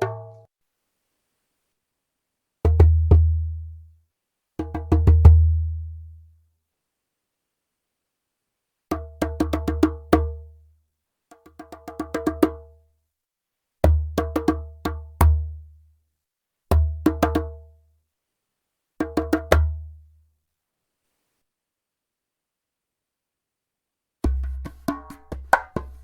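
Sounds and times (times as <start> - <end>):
djembe played by hand: 0.0 - 0.3, 4.6 - 5.7, 8.9 - 10.4, 11.4 - 12.7, 13.9 - 15.6, 16.7 - 17.6, 19.0 - 19.9, 24.2 - 26.0.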